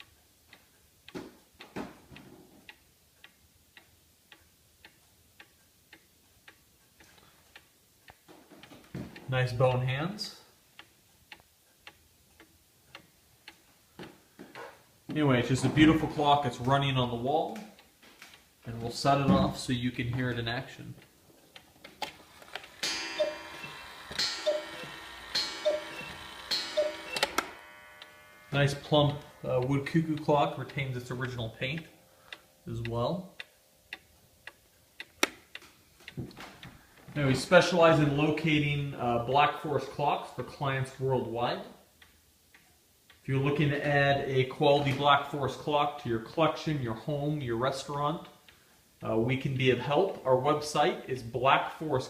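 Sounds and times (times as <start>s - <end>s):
clock pendulum ticking: 0.0s - 1.7s, 2.6s - 8.7s, 10.7s - 13.7s, 20.4s - 35.6s
clock strike ringing: 22.7s - 31.3s
two-note cuckoo call: 22.8s - 29.3s.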